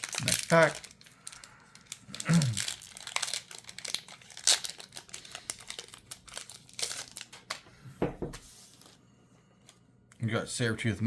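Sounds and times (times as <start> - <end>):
plastic wrapper crinkling and tearing: 0.0 - 7.7.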